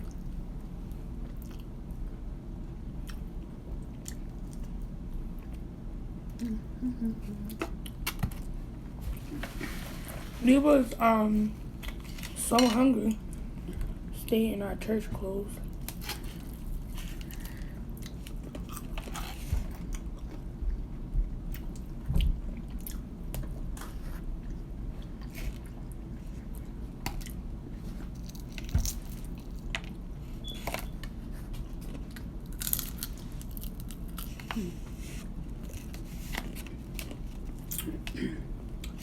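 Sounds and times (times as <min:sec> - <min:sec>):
steady low hum: 0:00.0 - 0:39.0
crunchy bites and chewing: 0:31.8 - 0:34.6.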